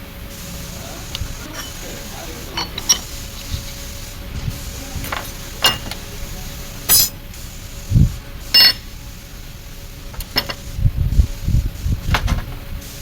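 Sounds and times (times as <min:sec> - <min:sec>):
faint steady hum: 0:00.0 - 0:13.0
metal tools clinking: 0:01.1 - 0:03.8, 0:05.0 - 0:06.1, 0:06.8 - 0:07.2, 0:08.6 - 0:08.9.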